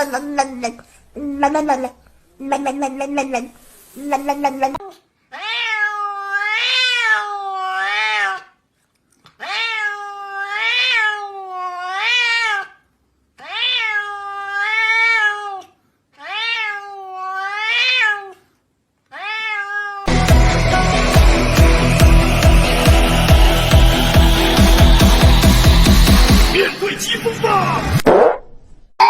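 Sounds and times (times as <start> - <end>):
cat meowing: 5.3 - 8.6, 9.4 - 12.8, 13.4 - 18.5, 19.1 - 20.1
loud electronic music: 20.1 - 28.0.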